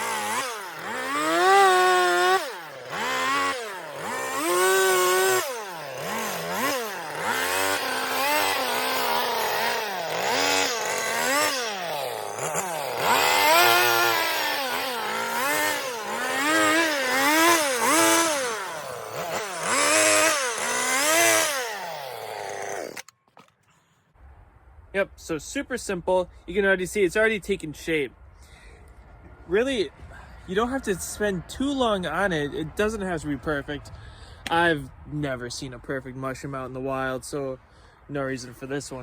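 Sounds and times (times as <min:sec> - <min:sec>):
chainsaw cutting wood: 0:00.0 - 0:23.5.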